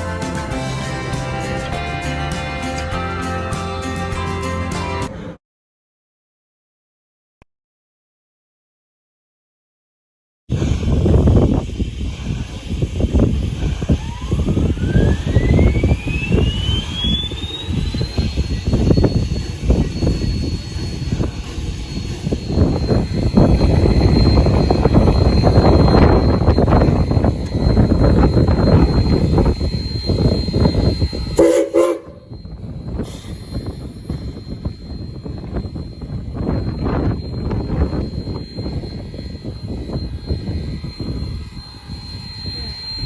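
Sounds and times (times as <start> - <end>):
heavy low rumble: 0.0 - 5.4, 10.5 - 43.0
machine whine rising in pitch: 0.0 - 5.4, 10.5 - 43.0
steam locomotive whistle toot: 13.6 - 21.6, 22.2 - 43.0.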